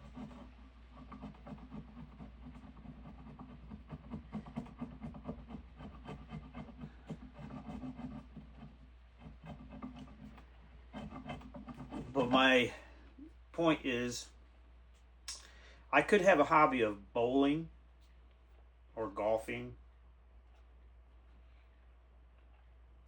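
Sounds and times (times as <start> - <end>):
scraping and rubbing on wood: 0.0 - 12.9
steady low hum: 0.0 - 23.0.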